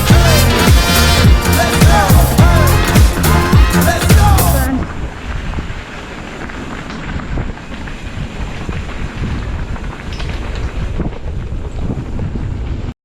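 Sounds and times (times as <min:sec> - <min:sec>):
wind buffeting microphone: 0:04.7 - 0:12.9.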